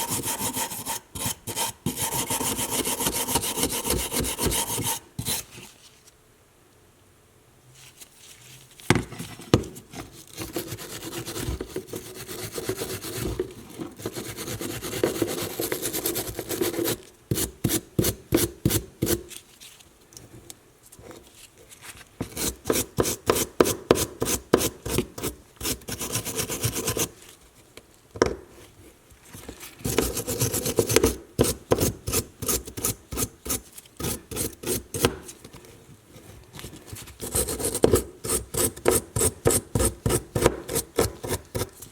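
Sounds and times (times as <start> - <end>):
hand scraping metal: 0.0 - 5.7.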